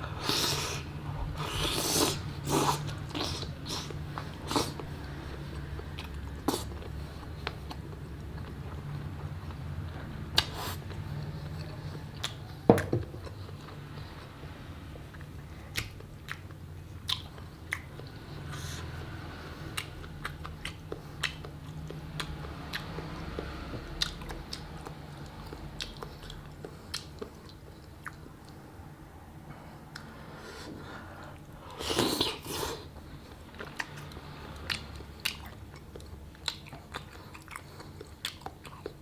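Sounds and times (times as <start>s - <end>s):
wet chewing and crunching: 0.0s - 28.8s, 31.2s - 39.0s.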